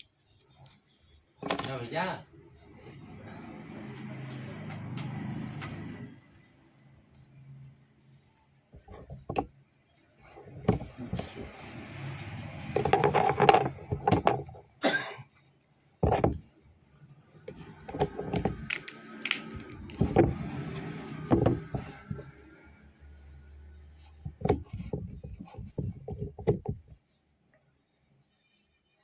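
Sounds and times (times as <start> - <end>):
objects clicking and knocking: 1.4 - 1.9, 12.4 - 14.8, 17.5 - 22.4.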